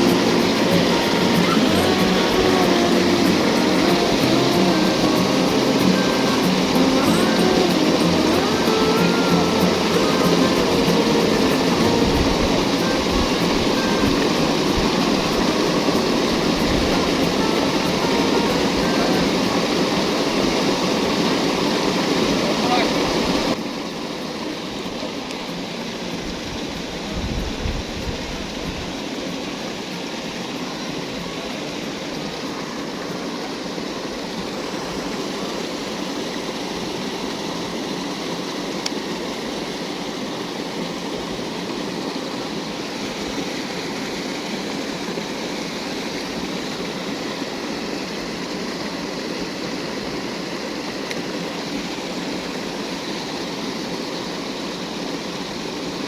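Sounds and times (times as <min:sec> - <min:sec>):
flowing water rushing: 0:00.0 - 0:56.0.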